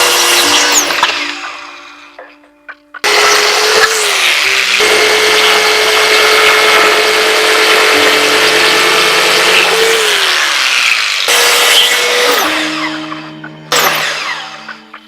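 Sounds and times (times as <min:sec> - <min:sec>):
power saw cutting plywood: 0:00.0 - 0:02.2, 0:03.0 - 0:15.0.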